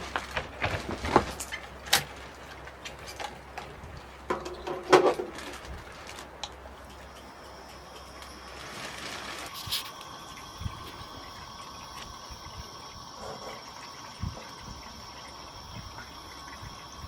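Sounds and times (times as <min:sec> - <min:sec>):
faint low hum: 0:03.2 - 0:17.0.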